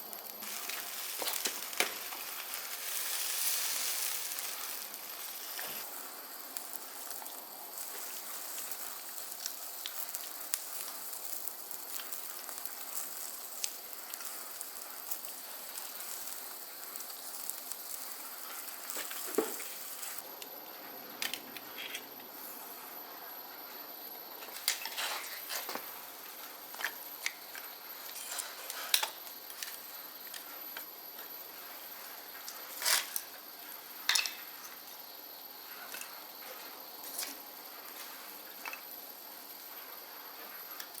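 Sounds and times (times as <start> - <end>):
food sizzling: 0.0 - 20.2, 31.4 - 41.0
fire crackling: 0.0 - 41.0.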